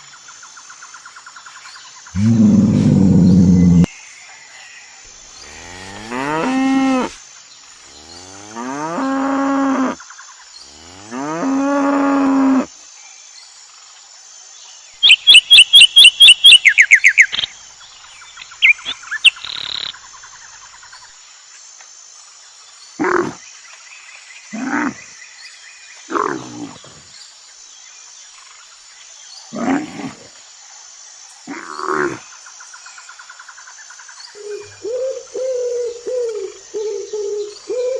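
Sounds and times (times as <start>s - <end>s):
cow mooing: 2.2s - 3.9s
short animal calls: 2.2s - 3.9s
high-pitched chirps: 15.0s - 17.5s.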